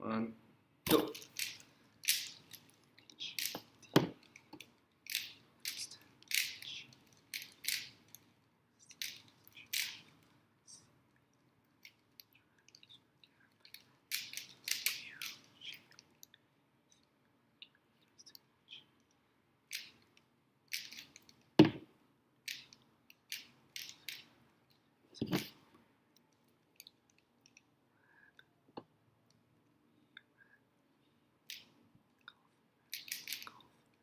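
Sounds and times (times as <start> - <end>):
puzzle cube layers clicking: 0.9 - 8.2, 8.8 - 10.2, 14.1 - 16.0, 20.7 - 21.4, 32.9 - 33.6.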